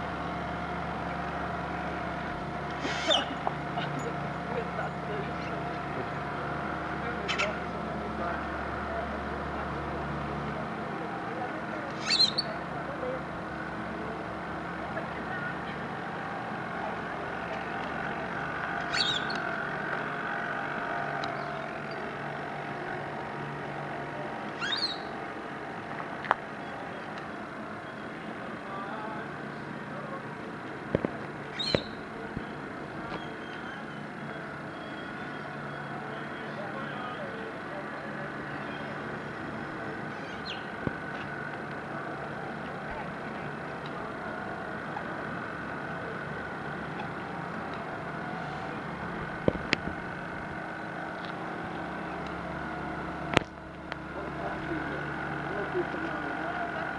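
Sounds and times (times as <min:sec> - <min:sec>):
model boat motor humming: 0:00.0 - 0:56.9
short high bird calls: 0:02.7 - 0:04.3, 0:07.2 - 0:07.6, 0:11.9 - 0:12.6, 0:18.8 - 0:19.6, 0:24.6 - 0:25.2, 0:31.5 - 0:32.0, 0:33.1 - 0:36.6, 0:40.1 - 0:40.7.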